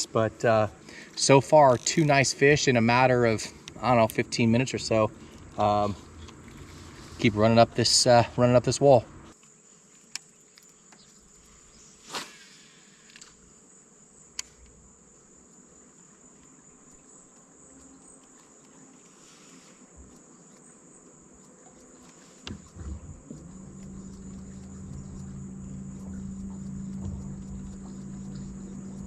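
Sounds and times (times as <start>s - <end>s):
low steady hum: 0.0s - 9.4s, 22.5s - 29.0s
insects chirring: 0.0s - 29.0s.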